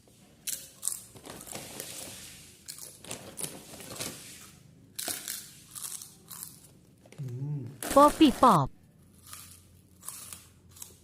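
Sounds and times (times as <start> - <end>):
crisps crunching: 0.5 - 8.4.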